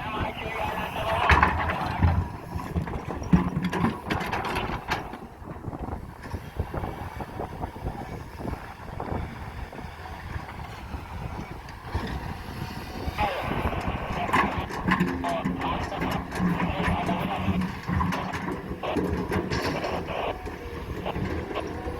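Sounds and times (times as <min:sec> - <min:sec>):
diesel engine running: 0:00.0 - 0:21.9
knocks and clatter: 0:01.2 - 0:05.2, 0:13.8 - 0:21.9.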